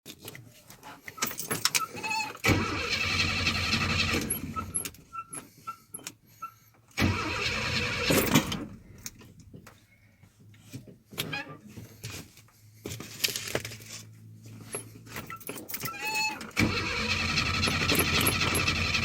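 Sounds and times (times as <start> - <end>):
starter cranking engine: 2.4 - 4.9, 7.0 - 8.8, 16.0 - 19.0.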